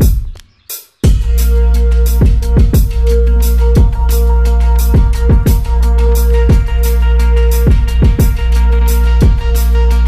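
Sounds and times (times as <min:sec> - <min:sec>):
electronic music with heavy bass: 0:00.0 - 0:00.4, 0:01.0 - 0:10.0.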